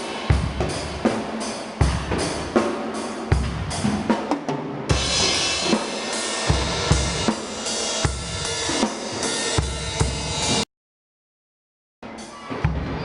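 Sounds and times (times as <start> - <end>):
cymbals washing: 4.9 - 10.6.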